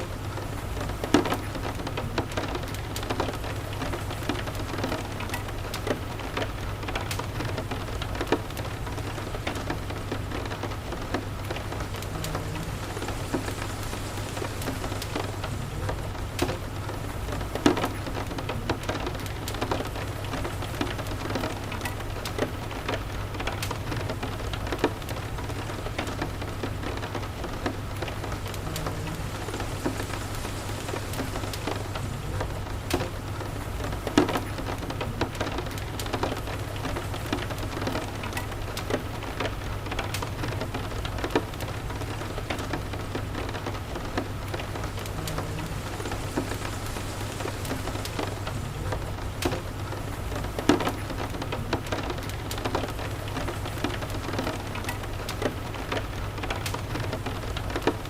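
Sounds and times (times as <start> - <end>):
steady rain: 0.0 - 58.0
wood fire crackling and popping: 0.0 - 58.0
low steady rumble: 43.4 - 50.7.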